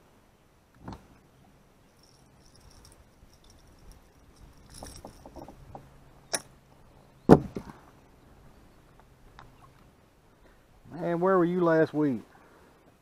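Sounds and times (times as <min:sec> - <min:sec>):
faint steady hum: 0:00.0 - 0:13.0
fishing gear knocks and clicks: 0:02.0 - 0:05.8.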